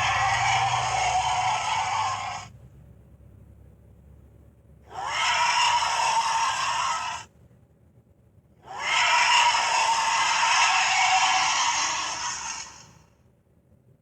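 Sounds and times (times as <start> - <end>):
harsh creature calls: 0.0 - 2.5, 4.9 - 7.3, 8.6 - 13.0.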